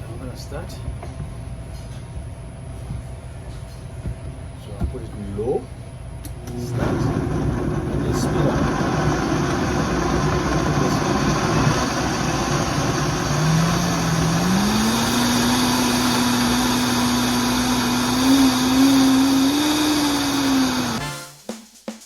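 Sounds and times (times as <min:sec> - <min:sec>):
blender motor running: 0:06.7 - 0:21.0.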